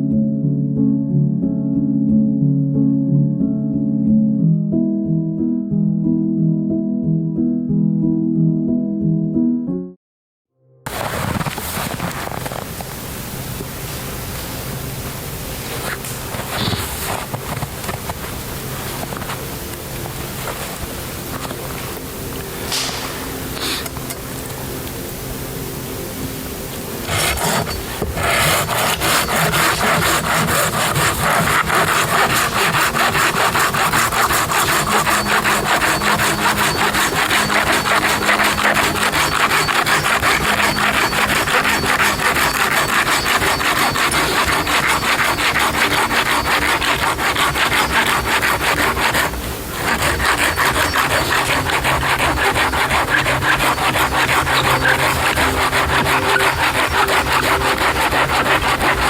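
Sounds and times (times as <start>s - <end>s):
hand saw cutting wood: 10.9s - 13.0s, 15.6s - 25.1s, 26.8s - 59.0s.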